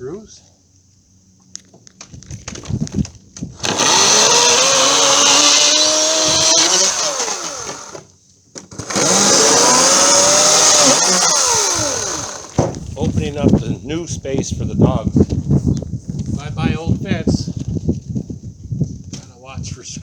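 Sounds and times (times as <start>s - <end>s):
electric chainsaw cutting wood: 3.6s - 12.8s.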